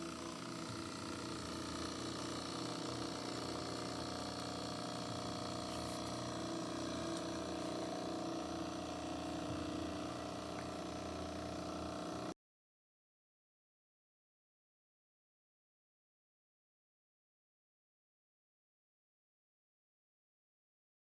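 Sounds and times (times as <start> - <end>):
coffee machine pump humming: 0.0 - 12.4.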